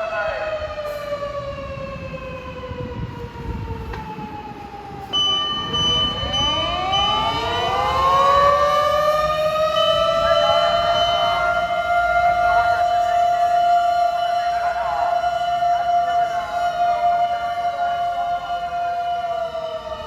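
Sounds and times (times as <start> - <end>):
fire engine siren wailing: 0.0 - 20.0
steady higher tone: 5.1 - 19.6.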